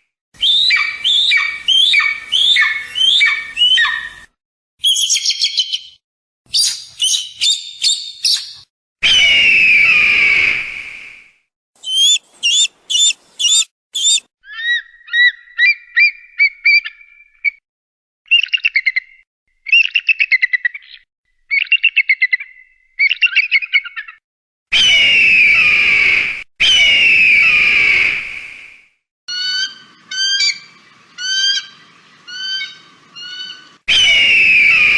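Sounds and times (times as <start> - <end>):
eagle calls: 0.4 - 4.2, 11.8 - 17.0
eagle chittering: 11.8 - 14.2
eagle screaming: 11.8 - 14.8, 31.2 - 34.9.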